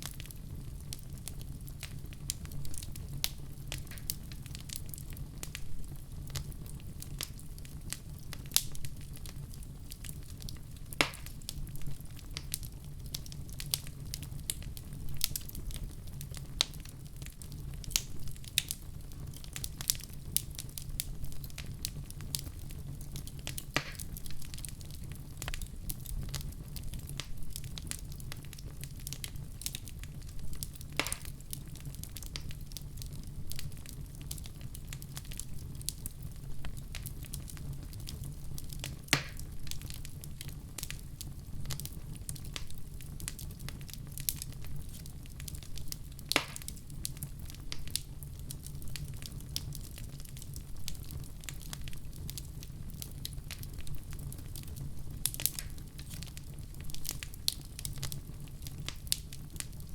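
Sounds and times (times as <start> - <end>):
fire crackling and popping: 0.0 - 59.9
low rumble of flames: 0.0 - 59.9.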